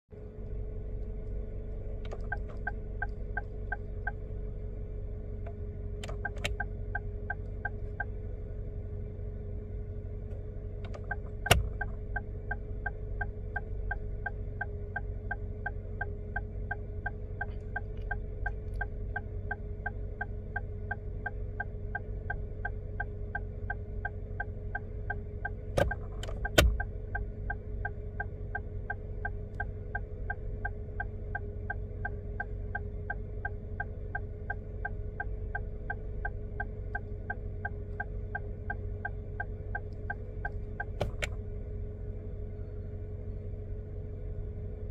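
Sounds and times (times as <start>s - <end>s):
steady low hum: 0.2s - 44.9s
turn-signal flasher ticking: 2.0s - 4.3s, 5.5s - 8.2s, 10.3s - 41.5s
sharp clicks: 10.9s - 12.2s, 25.8s - 27.0s, 39.0s - 41.4s.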